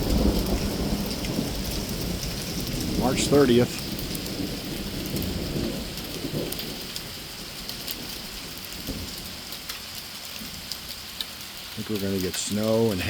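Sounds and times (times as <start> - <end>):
thunder rumble: 0.0 - 9.4
hail and rain pelting: 0.0 - 13.0.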